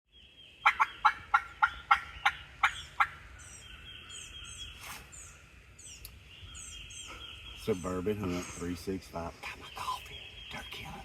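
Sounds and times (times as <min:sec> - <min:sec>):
small birds chirping faintly: 0:00.1 - 0:11.0
turkey yelping: 0:00.6 - 0:03.2.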